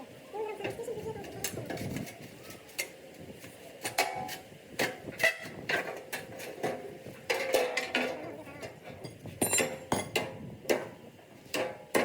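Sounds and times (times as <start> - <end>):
metal-on-metal clinks: 9.1 - 10.2.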